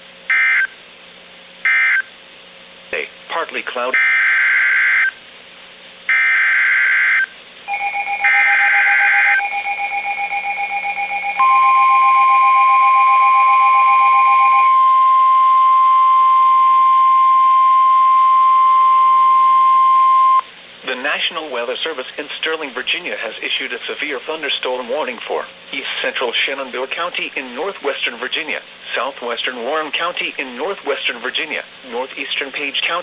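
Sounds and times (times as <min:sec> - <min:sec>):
steady warning alarm tone: 0:06.1 - 0:20.5
rapid alarm beeping: 0:07.7 - 0:20.5.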